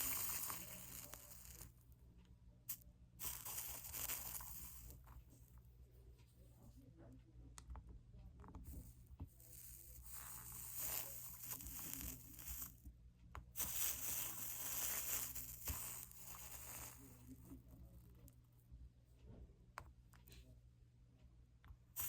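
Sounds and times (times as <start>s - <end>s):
soldering flux sizzling: 0.0s - 1.8s, 2.7s - 5.2s, 8.6s - 17.9s.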